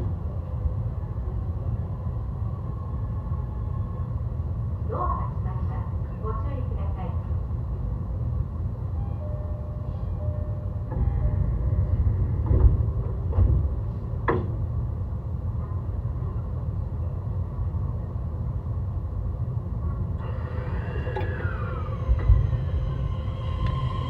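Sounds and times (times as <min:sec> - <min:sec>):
electric train rumble: 0:00.0 - 0:24.0
inverter whine rising and falling: 0:20.2 - 0:24.0.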